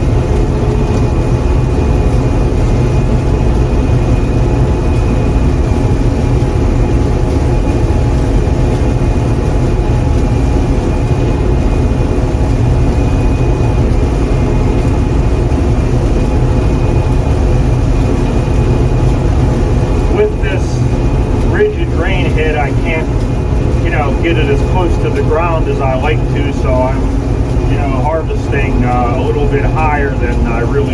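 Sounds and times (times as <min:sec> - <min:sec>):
combine harvester droning: 0:00.0 - 0:30.9
high steady whine: 0:00.0 - 0:30.9.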